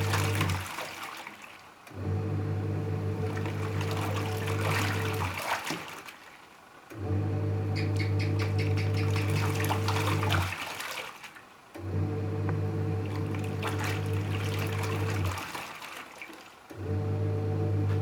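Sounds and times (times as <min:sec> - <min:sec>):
washing machine motor humming: 0:00.0 - 0:00.8, 0:01.8 - 0:05.5, 0:06.9 - 0:11.0, 0:11.7 - 0:16.0, 0:16.7 - 0:18.0
water sloshing: 0:00.0 - 0:02.0, 0:03.0 - 0:06.9, 0:07.8 - 0:17.0.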